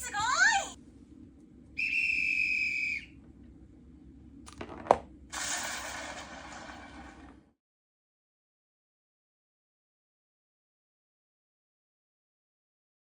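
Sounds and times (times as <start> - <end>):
high whistle blast: 1.8 - 3.2.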